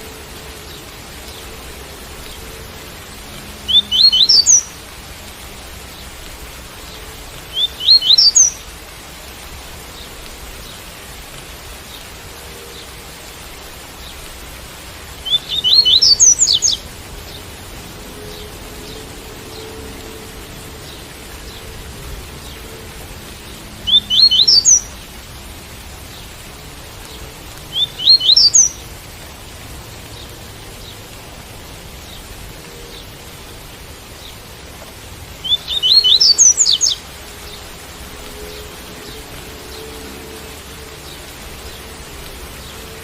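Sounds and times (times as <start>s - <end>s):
rain hiss: 0.0s - 43.0s
bird singing rising notes: 3.6s - 4.7s, 7.5s - 8.6s, 15.2s - 17.4s, 23.8s - 24.9s, 27.7s - 28.8s, 35.4s - 42.0s.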